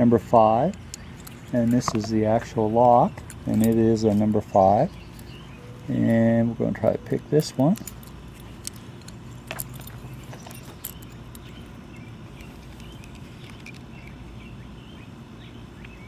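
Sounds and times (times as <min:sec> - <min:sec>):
low steady hum: 0:00.0 - 0:16.0
faint metallic clicks and scrapes: 0:00.7 - 0:06.2, 0:07.4 - 0:14.2.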